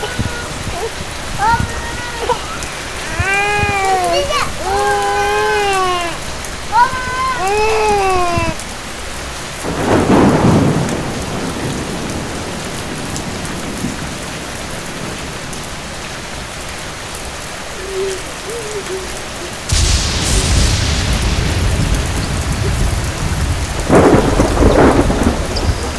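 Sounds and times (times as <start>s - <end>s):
steady rain falling: 0.0s - 25.9s
loud thunder: 9.6s - 15.7s, 19.7s - 25.9s.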